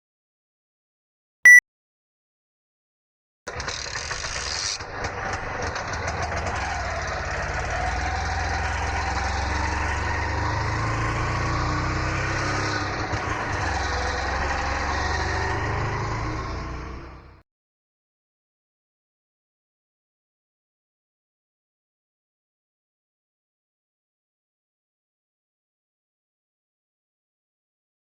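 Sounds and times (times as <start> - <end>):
rickshaw engine rumbling: 3.5 - 17.4.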